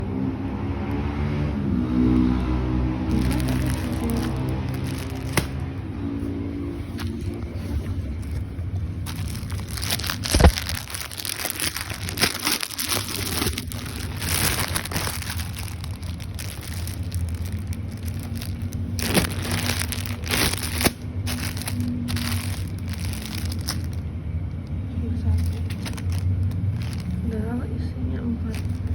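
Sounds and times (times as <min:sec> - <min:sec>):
steady low hum: 0:01.5 - 0:28.9
plastic packaging crinkling: 0:03.1 - 0:05.8, 0:06.9 - 0:24.0, 0:25.3 - 0:27.3, 0:28.5 - 0:28.9.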